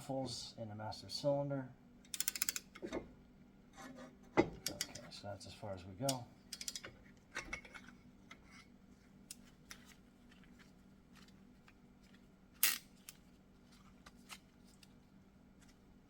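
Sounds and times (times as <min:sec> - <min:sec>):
faint steady hum: 0:00.0 - 0:16.0
metal tools clicking and knocking: 0:04.5 - 0:05.1, 0:06.1 - 0:08.0.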